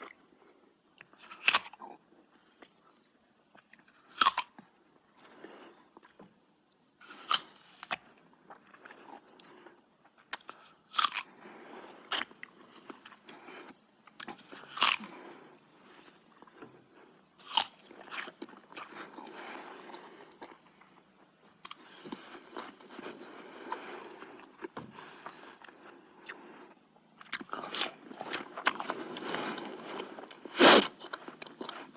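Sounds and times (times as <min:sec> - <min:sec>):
crackly chewing: 0:00.0 - 0:31.9
crunching bites of food: 0:01.0 - 0:02.0, 0:03.5 - 0:06.2, 0:07.0 - 0:15.4, 0:17.4 - 0:21.0, 0:27.2 - 0:31.9.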